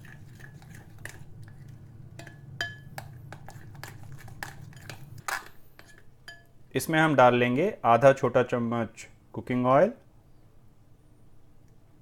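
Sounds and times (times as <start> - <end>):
spoon scraping mixing bowl: 0.0 - 6.5
low steady hum: 0.0 - 12.0.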